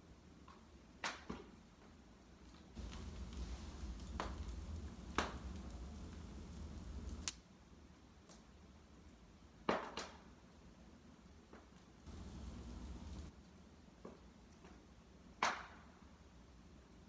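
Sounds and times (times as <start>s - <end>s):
wood fire crackling: 2.8s - 7.3s, 12.1s - 13.3s.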